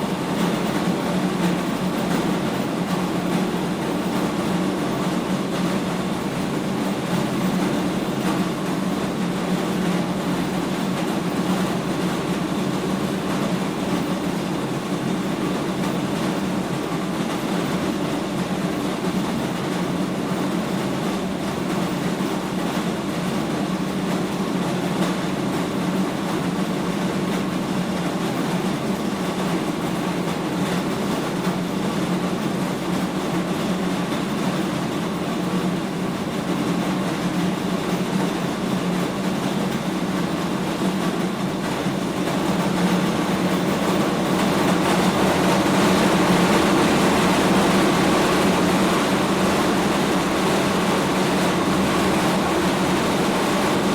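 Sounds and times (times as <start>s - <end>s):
feed mill machinery humming: 35.2s - 53.9s.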